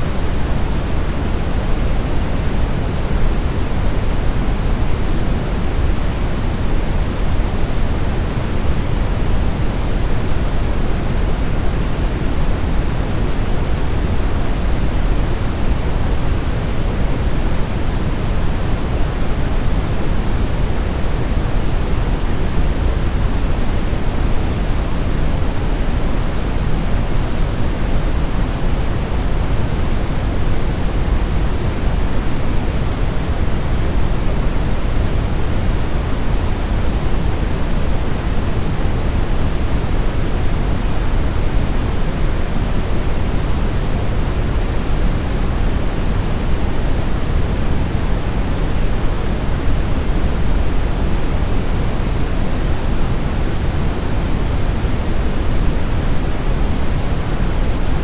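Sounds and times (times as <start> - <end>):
steady brown noise: 0.0 - 58.0.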